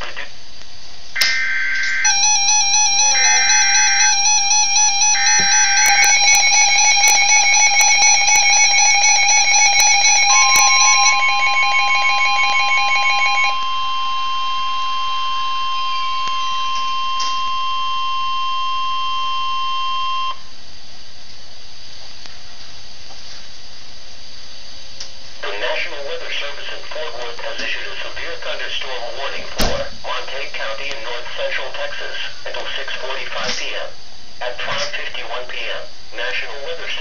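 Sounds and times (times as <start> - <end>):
radio hiss: 0.0 - 2.0, 25.3 - 37.0
warbling electronic alarm beep: 1.2 - 20.4
steady warning tone: 1.2 - 20.5.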